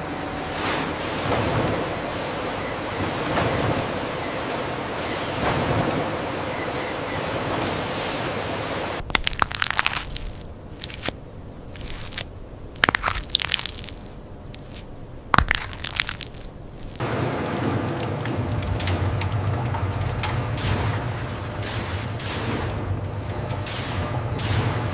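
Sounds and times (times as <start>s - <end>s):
sharp crunching and crackling: 9.0s - 18.3s.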